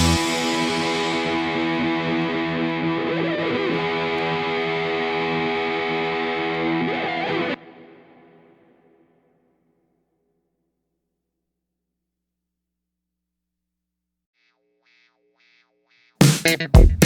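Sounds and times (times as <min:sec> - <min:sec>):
distorted electric guitar chord: 0:00.0 - 0:08.0.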